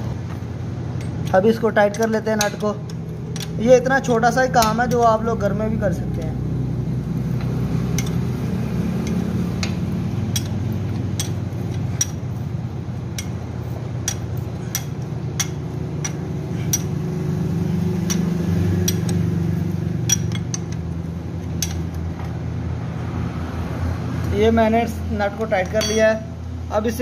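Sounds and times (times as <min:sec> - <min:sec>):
steady low hum: 0:00.0 - 0:27.0
wrench clicking on metal: 0:01.0 - 0:03.6, 0:07.9 - 0:08.2, 0:09.0 - 0:12.2, 0:13.1 - 0:13.4, 0:14.0 - 0:17.0, 0:18.0 - 0:19.2, 0:20.0 - 0:22.0.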